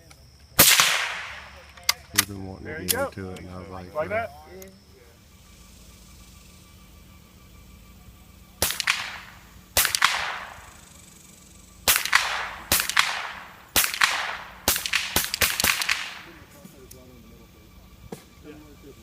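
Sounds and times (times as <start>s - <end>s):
gunshots with echo: 0.6s - 1.6s, 8.6s - 10.8s, 11.8s - 16.4s.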